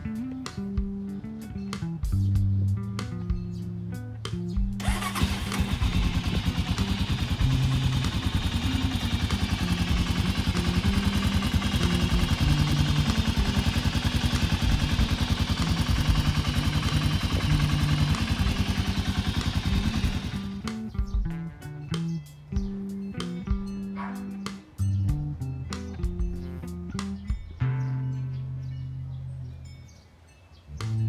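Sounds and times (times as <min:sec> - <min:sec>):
motorcycle engine idling: 0:04.6 - 0:23.7.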